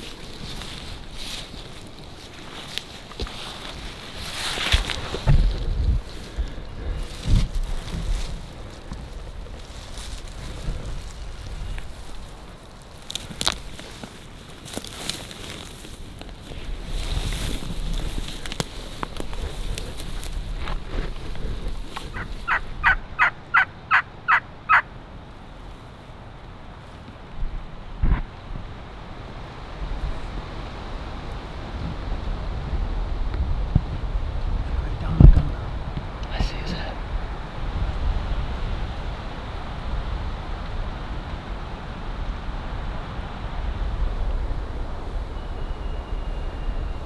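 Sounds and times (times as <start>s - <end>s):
wind noise: 0.0s - 24.0s, 27.2s - 47.0s
turkey yelps: 22.1s - 24.8s.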